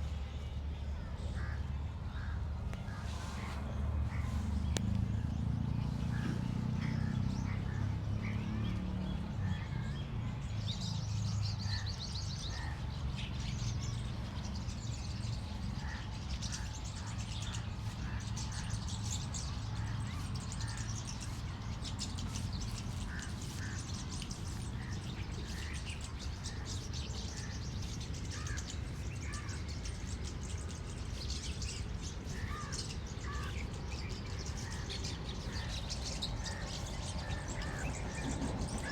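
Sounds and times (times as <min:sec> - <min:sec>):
small birds chirping: 0:00.0 - 0:38.9
crow calling: 0:22.2 - 0:29.8, 0:32.3 - 0:33.7, 0:34.4 - 0:38.9.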